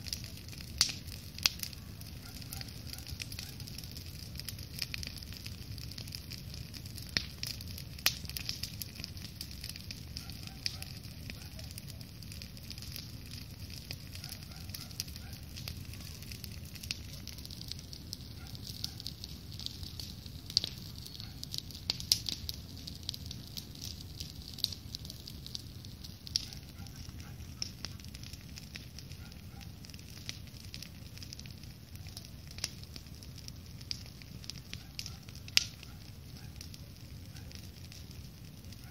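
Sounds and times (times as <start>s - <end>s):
campfire crackling and popping: 0.0s - 38.9s
low fire rumble: 0.0s - 38.9s.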